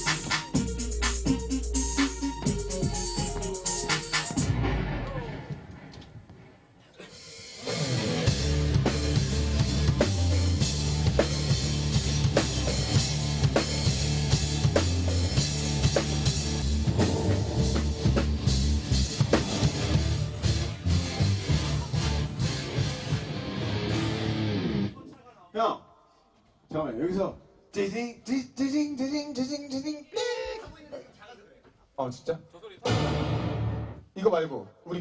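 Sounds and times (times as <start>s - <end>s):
drum kit beat: 0.0s - 4.6s, 7.3s - 23.5s
bass line: 7.8s - 25.0s.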